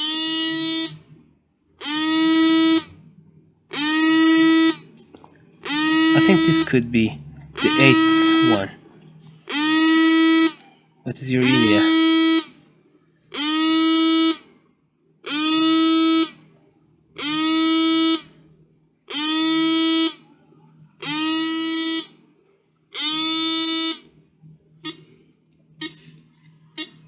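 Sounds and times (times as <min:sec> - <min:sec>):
electronic alarm beep: 0:05.7 - 0:06.9, 0:07.6 - 0:08.7.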